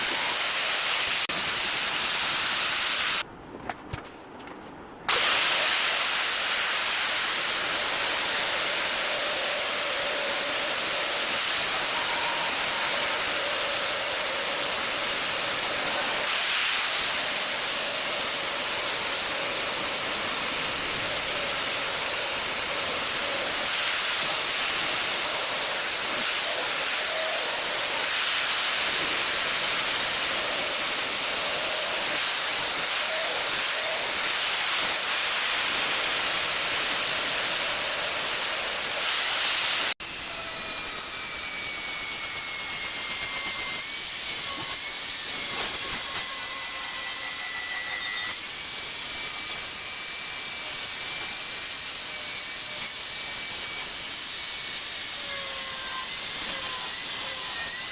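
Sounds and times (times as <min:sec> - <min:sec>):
power tool whining on wood: 0:00.0 - 0:03.2, 0:05.1 - 0:57.9.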